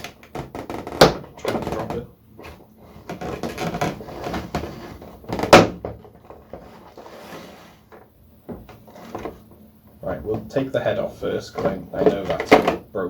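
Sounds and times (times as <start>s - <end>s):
cardboard and plastic packaging rustling: 0.0s - 9.6s, 11.4s - 12.8s
loud scrape: 6.5s - 7.9s.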